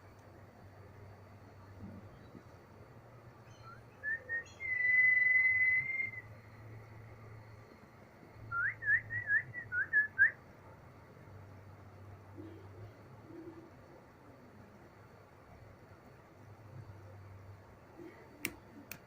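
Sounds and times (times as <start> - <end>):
high whistled chirps: 3.4 - 7.8, 8.4 - 10.4.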